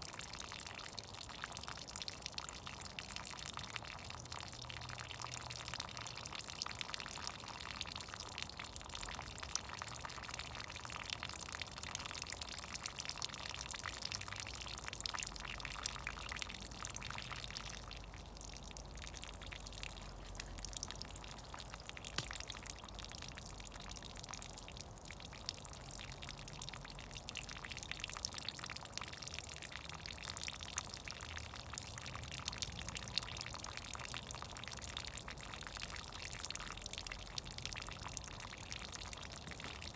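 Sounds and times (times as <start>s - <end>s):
melting snow dripping: 0.0s - 39.9s.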